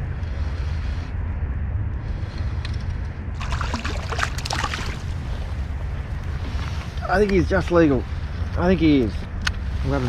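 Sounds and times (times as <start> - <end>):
wind rumble on microphone: 0.0 - 10.0
water splashing and dripping: 3.4 - 5.7.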